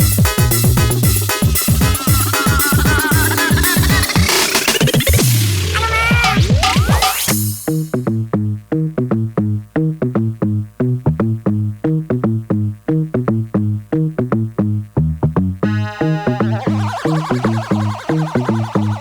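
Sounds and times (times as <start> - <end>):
synth bass notes: 0.0 - 7.4, 15.5 - 19.0
drum machine beat: 0.0 - 8.0, 15.6 - 19.0
bright synth layer: 1.1 - 7.3, 15.6 - 19.0.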